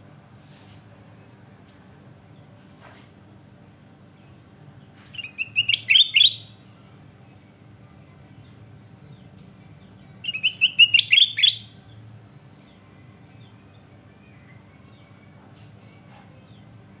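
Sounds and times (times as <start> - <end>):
bird whistled song: 5.1 - 6.6, 10.2 - 11.8.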